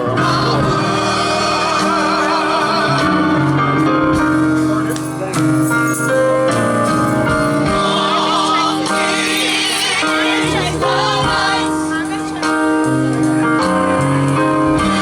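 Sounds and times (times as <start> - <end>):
vocal group singing gospel: 0.0 - 5.0, 6.5 - 15.0
instrumental accompaniment: 0.0 - 15.0.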